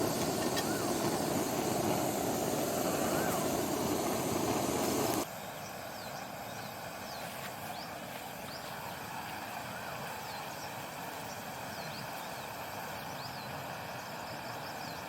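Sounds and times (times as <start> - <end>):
soft gliding bird call: 0.0 - 5.2
loud steady noise: 0.0 - 5.3
small birds chirping: 0.0 - 8.7.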